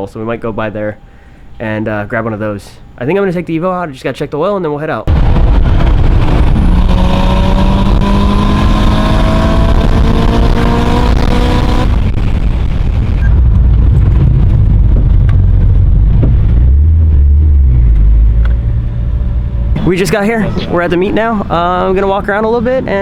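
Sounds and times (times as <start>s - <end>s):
car engine accelerating: 5.1s - 21.2s
road and wind noise: 5.1s - 23.0s.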